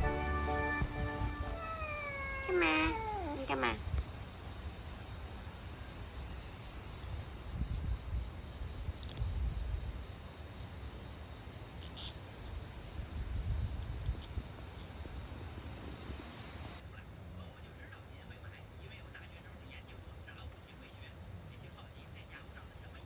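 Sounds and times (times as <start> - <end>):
high insect drone: 1.0 - 23.0
sharp clicks: 8.9 - 9.4, 13.8 - 16.1.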